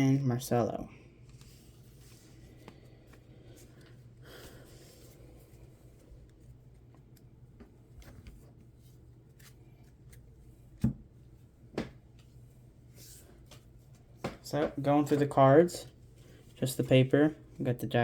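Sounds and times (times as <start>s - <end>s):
low steady hum: 0.0s - 18.0s
trading cards sliding and rustling: 1.3s - 7.2s.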